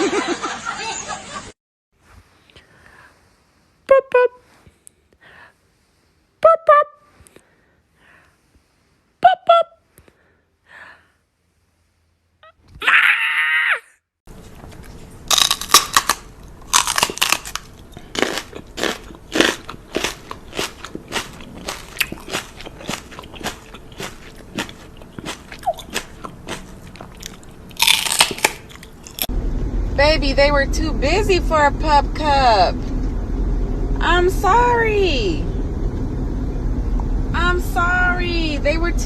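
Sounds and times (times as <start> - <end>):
dog chewing and crunching: 14.5 - 29.3.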